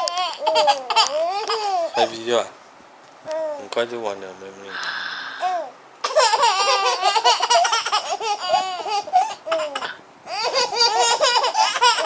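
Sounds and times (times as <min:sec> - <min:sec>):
babies giggling: 0:00.0 - 0:02.2, 0:05.4 - 0:12.0.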